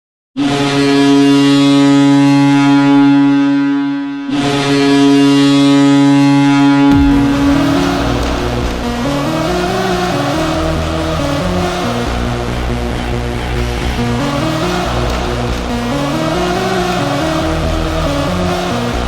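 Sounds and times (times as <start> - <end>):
arena goal horn blasting: 0.4 - 6.8
music: 6.9 - 19.0.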